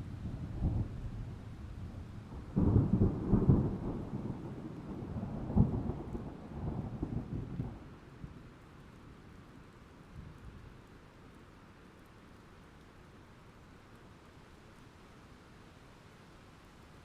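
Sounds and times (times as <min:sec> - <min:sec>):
thunder rumbling: 0:00.2 - 0:07.9.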